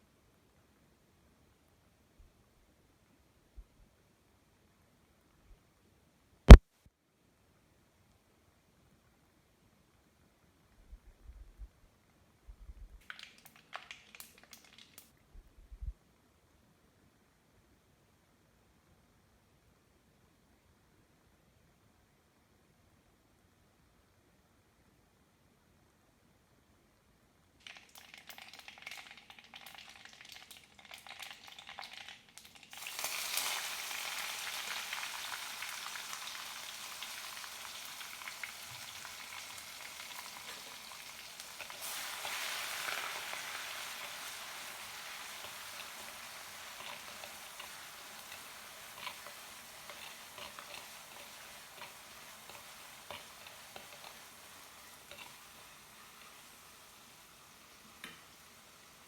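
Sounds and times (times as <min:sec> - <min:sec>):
food frying in hot oil: 0:13.0 - 0:15.1, 0:27.6 - 0:59.0.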